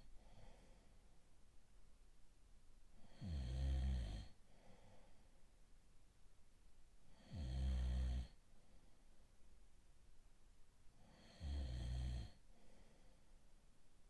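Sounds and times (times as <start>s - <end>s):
faint breath: 0.0s - 1.3s, 4.4s - 5.5s, 8.5s - 9.3s, 12.4s - 13.6s
man snoring: 3.0s - 4.4s, 7.2s - 8.4s, 11.1s - 12.4s.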